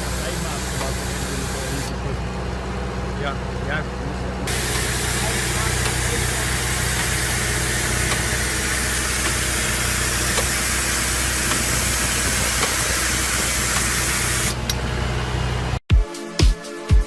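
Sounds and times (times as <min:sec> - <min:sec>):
loud hiss of spraying water: 0:00.0 - 0:02.0, 0:04.5 - 0:14.6
machine engine running: 0:00.0 - 0:15.8.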